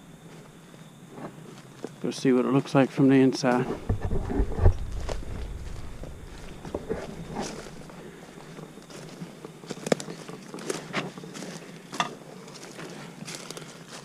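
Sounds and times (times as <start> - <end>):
rustling brush and fabric: 3.6 - 9.4.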